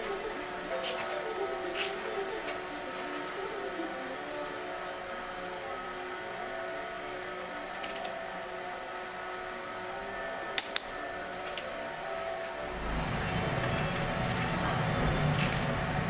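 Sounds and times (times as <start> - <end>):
machine hum and hiss: 0.0 - 16.0.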